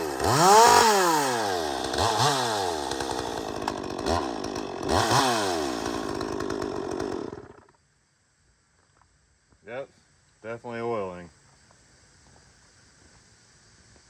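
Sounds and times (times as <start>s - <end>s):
chainsaw engine revving: 0.0s - 7.8s.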